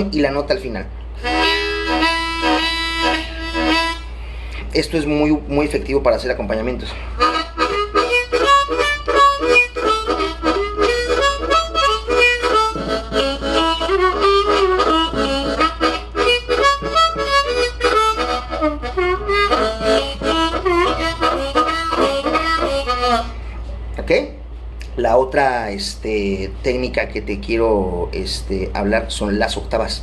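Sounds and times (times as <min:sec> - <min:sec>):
harmonica playing choppy rhythm: 0:01.2 - 0:04.9, 0:06.4 - 0:23.8.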